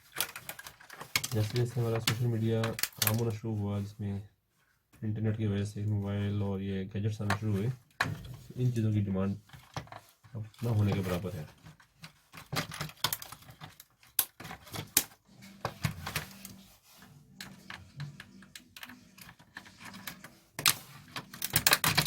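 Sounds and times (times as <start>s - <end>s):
plastic parts clicking and knocking: 0.0s - 3.3s, 7.2s - 8.6s, 9.4s - 16.6s, 17.3s - 22.0s.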